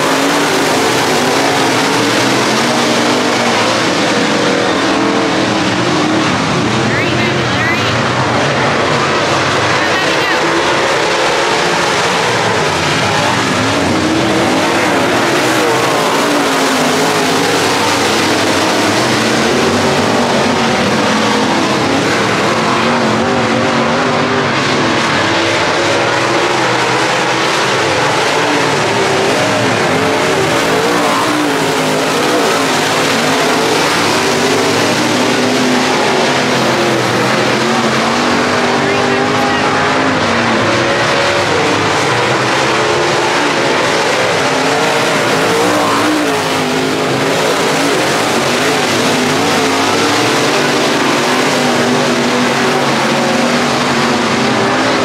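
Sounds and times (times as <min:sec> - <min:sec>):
race car engines: 0:00.0 - 0:55.0.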